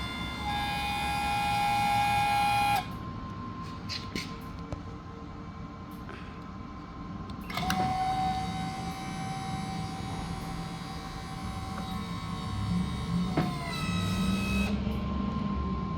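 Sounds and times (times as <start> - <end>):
electric hydraulic pump whining: 0.0 - 3.0, 7.5 - 15.0.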